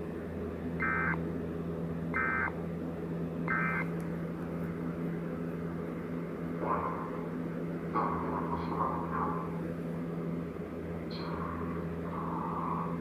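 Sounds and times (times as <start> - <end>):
steady low hum: 0.0 - 13.0
screechy digital data tones: 0.8 - 1.2, 2.2 - 2.5, 3.5 - 3.9.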